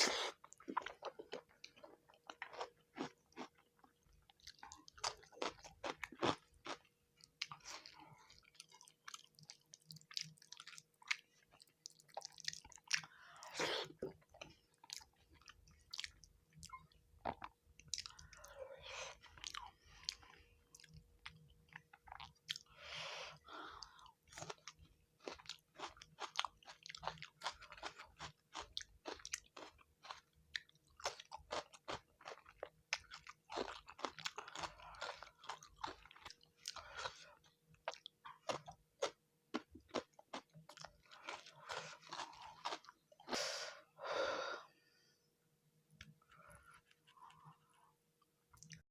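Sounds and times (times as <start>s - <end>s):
chewing mouth clicks and smacks: 48.5s - 48.8s.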